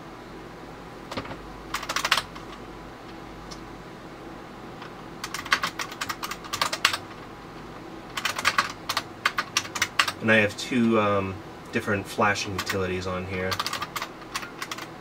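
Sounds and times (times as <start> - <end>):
steady background hum: 0.0 - 15.0
keyboard typing: 1.1 - 2.6, 4.8 - 7.2, 8.1 - 10.2, 13.5 - 14.9.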